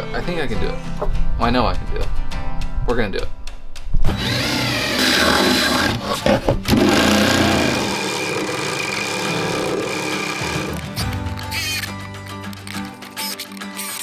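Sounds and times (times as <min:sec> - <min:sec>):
power tool grinding metal: 0:04.1 - 0:11.0.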